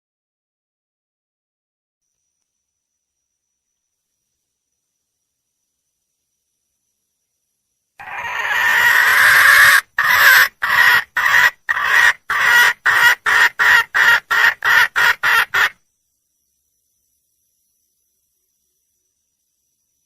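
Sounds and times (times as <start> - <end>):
wild hen calling: 8.0 - 15.8.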